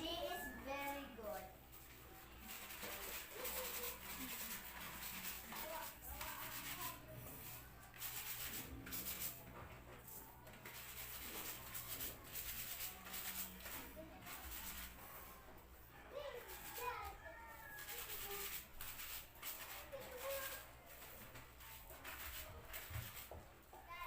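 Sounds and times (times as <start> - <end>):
scrubbing wet fabric: 2.5 - 9.4, 10.6 - 15.0, 17.7 - 23.3.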